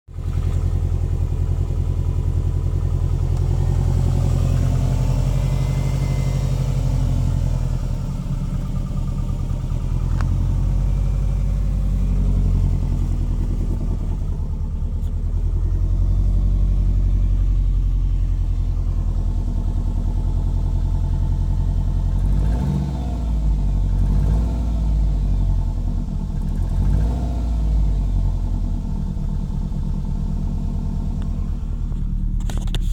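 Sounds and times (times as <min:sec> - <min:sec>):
car engine running: 0:00.1 - 0:32.9.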